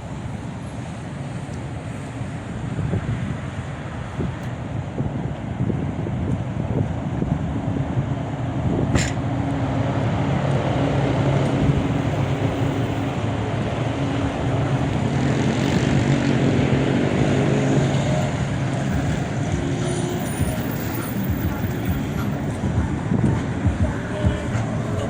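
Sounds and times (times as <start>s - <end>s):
vehicle engine running: 9.3s - 25.0s.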